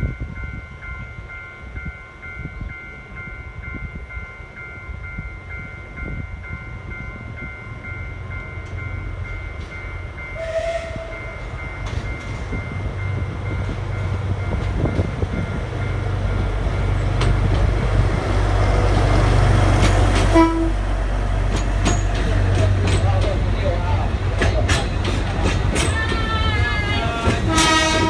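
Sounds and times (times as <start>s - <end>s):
steam train rumbling: 0.8s - 28.0s
train whistle toot: 10.4s - 11.5s, 20.3s - 20.8s, 25.8s - 28.0s.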